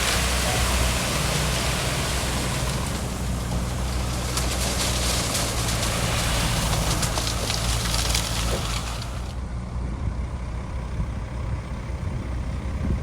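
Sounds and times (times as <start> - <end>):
broad rushing noise: 0.0 - 9.3
diesel engine running: 0.0 - 13.0.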